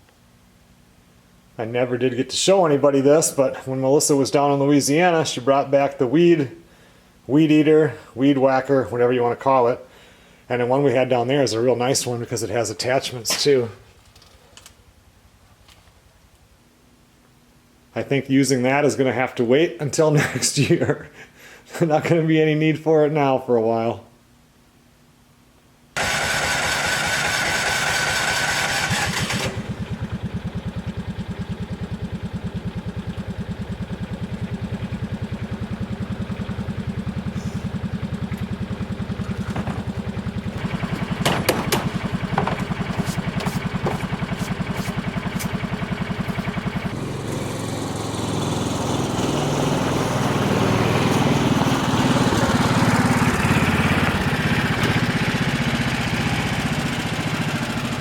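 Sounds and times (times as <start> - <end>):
small engine running: 26.0 - 58.0.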